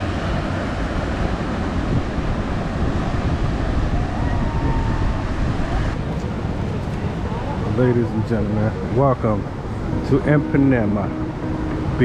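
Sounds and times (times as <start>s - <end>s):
heavy low rumble: 0.0s - 12.0s
faint held tone: 9.7s - 12.0s.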